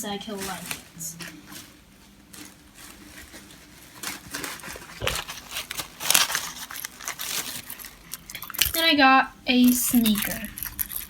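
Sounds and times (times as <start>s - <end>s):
toys crinkling and clattering: 3.1s - 8.9s, 9.6s - 11.0s.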